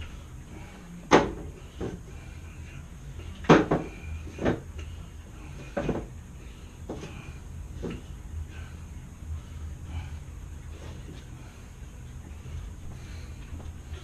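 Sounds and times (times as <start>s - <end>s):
wooden knocks and clunks: 3.5s - 4.6s, 5.8s - 6.1s.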